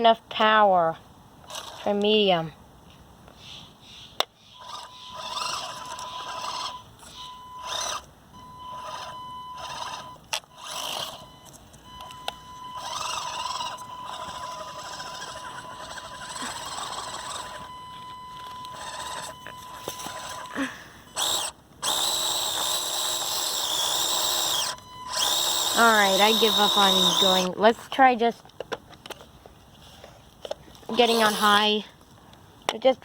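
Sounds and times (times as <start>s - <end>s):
small electric motor whining: 4.4s - 27.5s, 30.9s - 31.7s.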